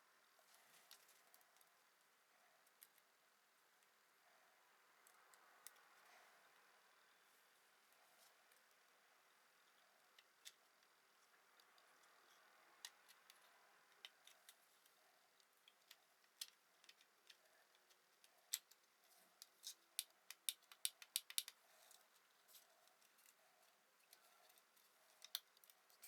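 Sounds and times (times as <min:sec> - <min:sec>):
clicks and taps of plastic parts: 0:19.4 - 0:21.6.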